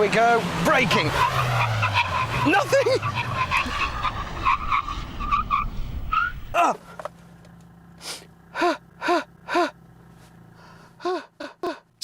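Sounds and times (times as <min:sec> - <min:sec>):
car tyres skidding and squealing: 0:00.0 - 0:07.2
person gasping: 0:08.0 - 0:09.8, 0:10.6 - 0:12.0.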